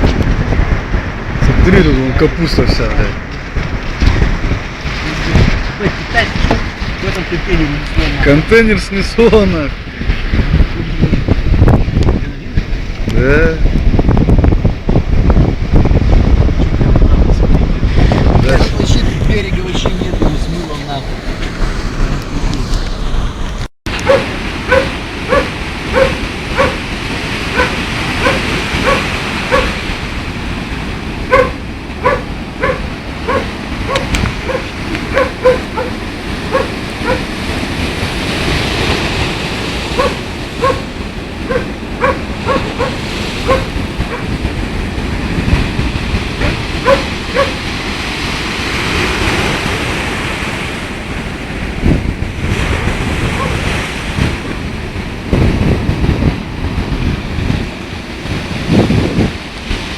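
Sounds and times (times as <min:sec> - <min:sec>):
storm surf: 0:00.0 - 0:59.9
wind: 0:00.0 - 0:59.9
dog barking: 0:24.0 - 0:26.9, 0:27.5 - 0:29.9, 0:31.3 - 0:37.4, 0:39.9 - 0:44.4, 0:46.4 - 0:47.7, 0:53.2 - 0:53.7.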